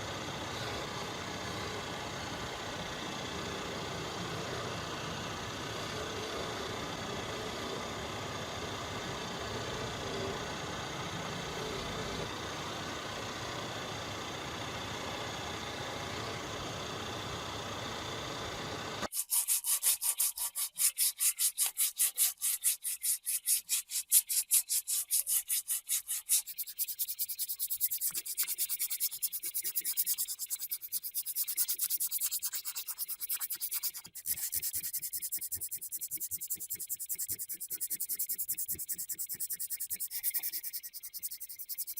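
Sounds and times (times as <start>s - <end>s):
steady mechanical noise: 0.0s - 41.9s
hand sanding strokes: 19.1s - 41.9s.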